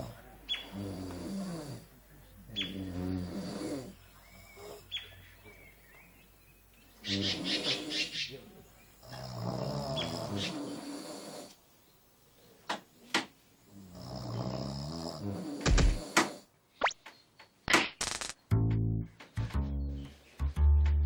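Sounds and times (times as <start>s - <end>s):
man snoring heavily: 0.0s - 1.9s, 2.6s - 4.0s, 7.1s - 8.1s, 9.0s - 11.6s, 13.7s - 16.5s
sharp clicks and thumps: 15.6s - 16.0s, 16.8s - 19.7s.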